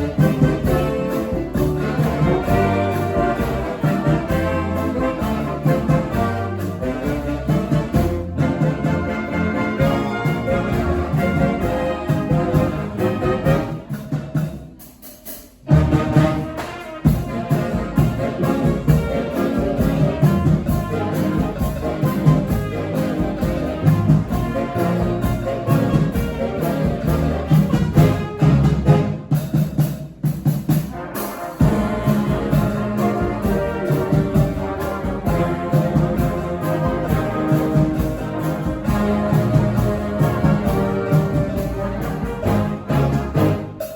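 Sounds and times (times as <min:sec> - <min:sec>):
brass band playing: 0:00.0 - 0:43.9.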